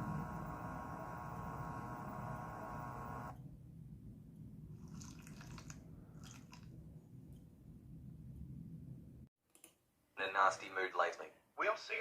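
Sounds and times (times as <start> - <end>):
low electrical hum: 0.0 - 4.1.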